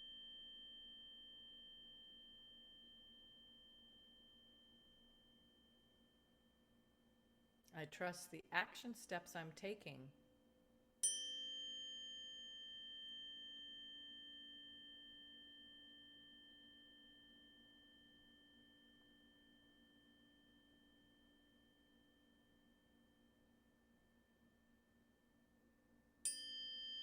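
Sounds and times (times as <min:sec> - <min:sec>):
metal singing bowl ringing: 0:11.0 - 0:21.6, 0:26.3 - 0:27.0.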